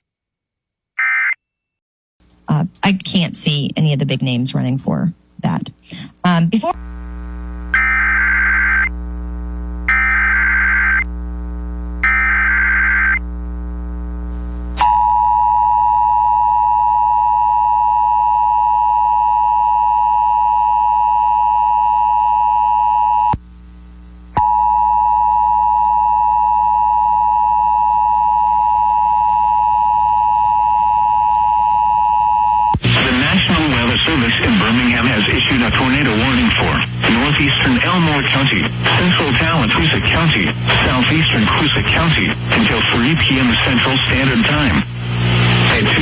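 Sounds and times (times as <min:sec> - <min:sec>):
screeching data bursts: 0:07.7 - 0:08.9, 0:09.9 - 0:11.1, 0:12.0 - 0:13.2.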